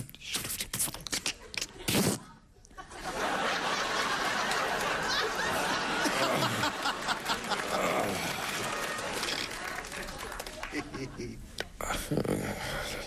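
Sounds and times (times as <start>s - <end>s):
studio audience laughing: 2.7s - 11.4s.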